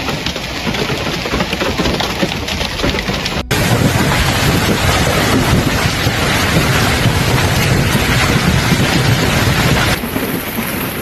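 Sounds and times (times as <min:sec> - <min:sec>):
heavy rain rushing: 0:00.0 - 0:11.0
wind on microphone: 0:03.4 - 0:10.9.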